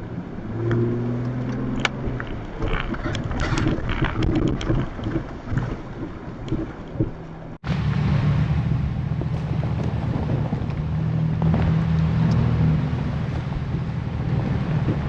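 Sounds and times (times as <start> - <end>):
truck engine rumbling: 0.0 - 15.0
knocks and rattles: 1.4 - 7.6, 9.0 - 11.8.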